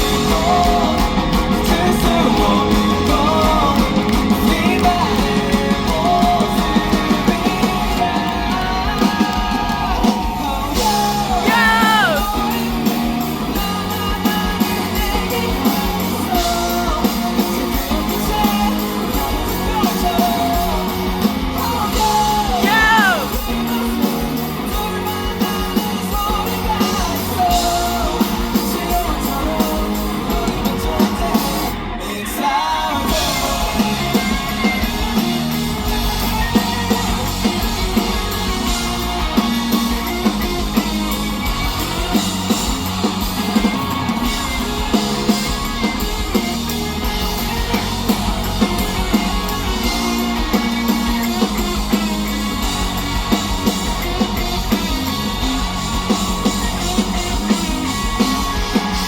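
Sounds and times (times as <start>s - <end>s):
person singing: 0.0s - 40.9s
drum kit beat: 0.0s - 59.0s
electric guitars: 0.0s - 59.0s
live rock band: 0.0s - 59.0s.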